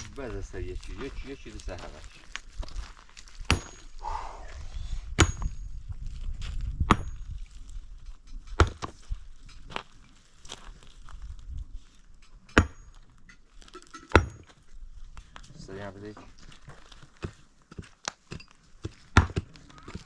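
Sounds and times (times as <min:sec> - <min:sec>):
hard blows with metallic ring: 0:05.2 - 0:05.9.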